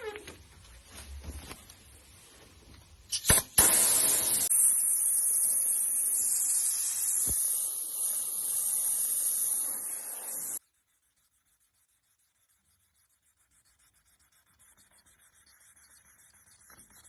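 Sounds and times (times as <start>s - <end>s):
sprayer hissing: 3.6s - 10.6s.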